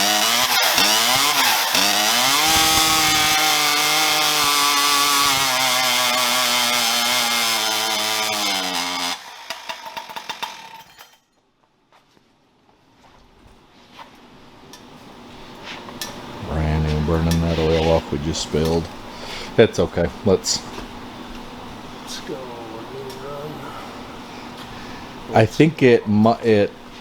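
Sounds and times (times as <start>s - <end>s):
chainsaw engine revving: 0.0s - 11.1s.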